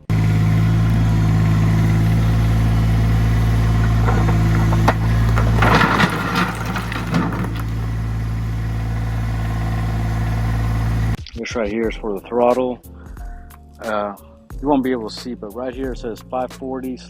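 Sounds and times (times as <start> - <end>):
tractor diesel engine running: 0.0 - 11.2
clattering and rustling: 3.5 - 8.3.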